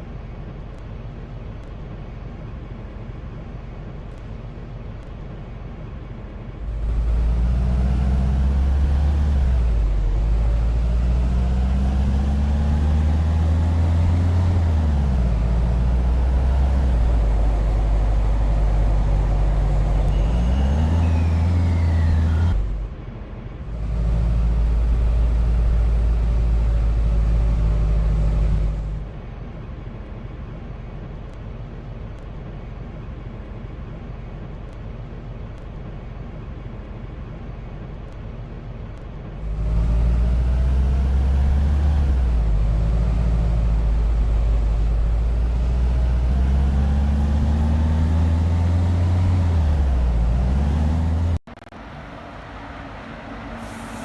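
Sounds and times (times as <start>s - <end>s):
steady road noise: 0.0s - 54.0s
motor vehicle engine revving: 39.4s - 51.5s.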